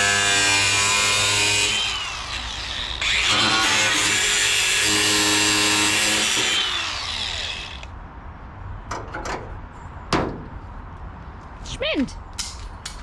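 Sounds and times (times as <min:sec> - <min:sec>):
angle grinder whining: 0:00.0 - 0:07.9.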